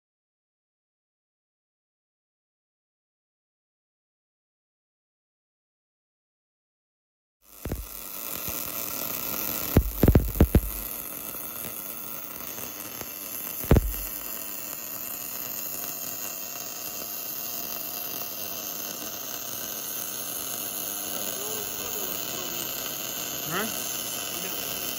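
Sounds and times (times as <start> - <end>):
machinery hissing: 7.7 - 14.6, 17.6 - 24.9.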